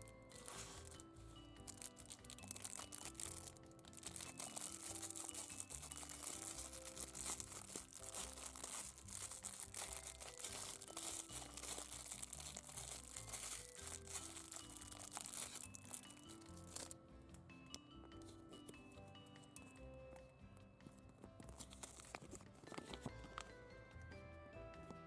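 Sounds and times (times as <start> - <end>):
plastic packaging crinkling: 0.0 - 17.0, 21.5 - 23.5
soft background music: 0.0 - 25.0.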